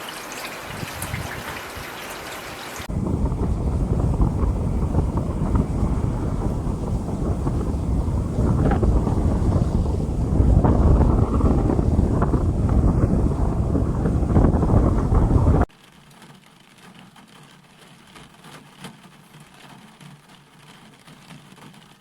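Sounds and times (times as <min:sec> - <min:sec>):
wind buffeting microphone: 0:00.0 - 0:15.7
rain: 0:00.0 - 0:22.0.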